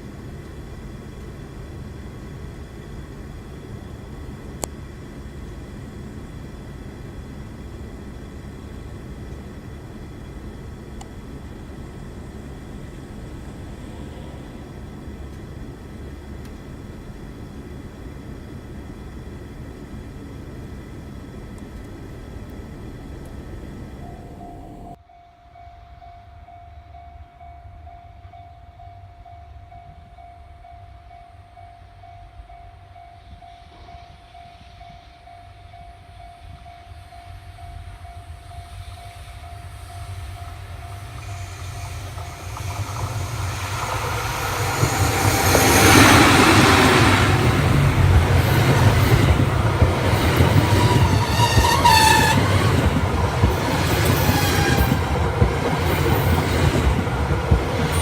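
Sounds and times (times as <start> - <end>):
train rumbling past: 0.0 - 58.0.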